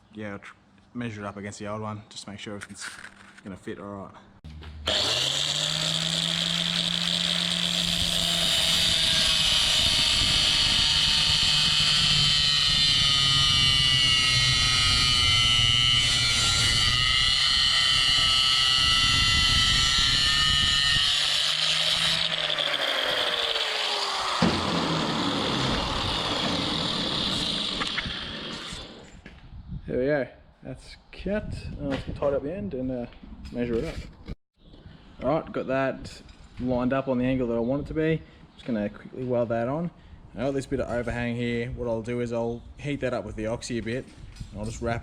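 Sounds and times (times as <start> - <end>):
cut-off disc grinding steel: 4.5 - 29.2
power tool motor humming: 4.8 - 29.2.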